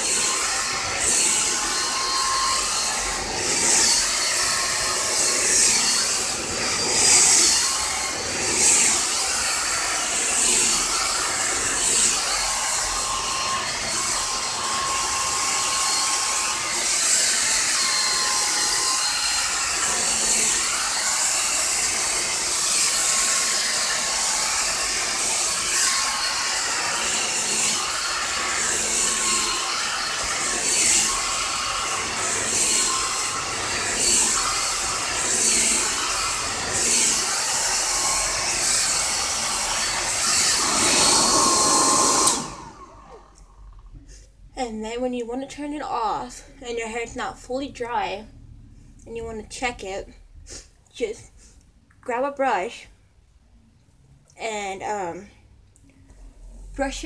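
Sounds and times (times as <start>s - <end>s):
blow-dryer motor whine: 0.0s - 43.8s
rushing air hiss: 40.2s - 42.8s.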